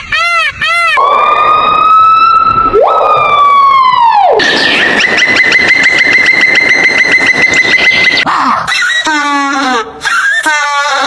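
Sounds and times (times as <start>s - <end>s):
siren wailing and yelping: 0.0s - 8.3s.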